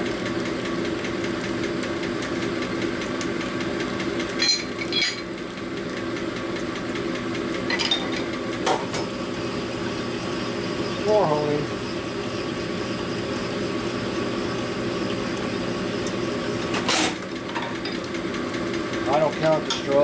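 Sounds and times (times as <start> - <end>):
honing machine running: 9.2 - 16.8.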